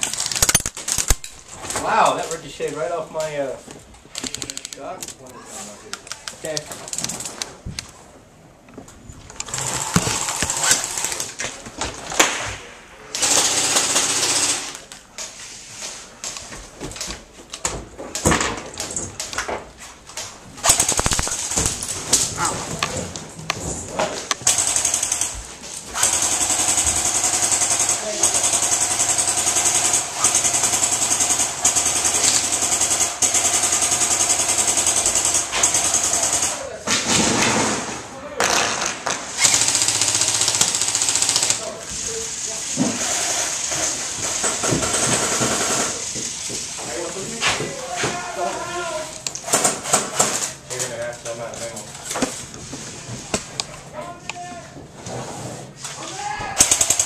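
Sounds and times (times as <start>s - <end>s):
sharp clicks: 4.1s - 5.2s, 20.1s - 22.2s
airsoft gun firing full auto: 13.2s - 14.8s, 20.6s - 21.9s, 24.4s - 36.6s, 38.4s - 41.7s, 56.6s - 57.0s.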